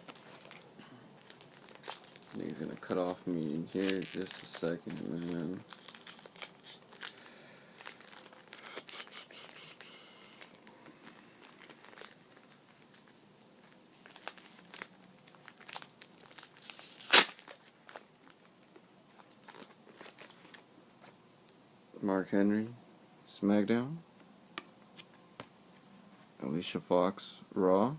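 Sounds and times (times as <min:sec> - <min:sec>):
card packaging crinkling: 0:00.0 - 0:20.6.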